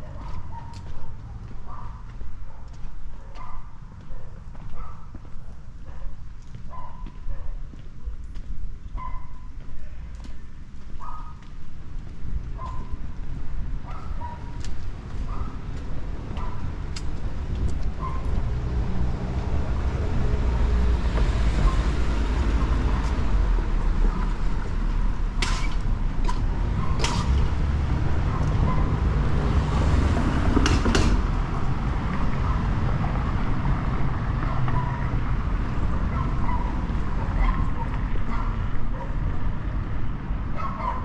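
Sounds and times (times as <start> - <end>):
cars passing: 0.0 - 5.4, 12.0 - 41.0
low rumble of traffic: 0.0 - 41.0
sharp knocks: 30.5 - 31.3.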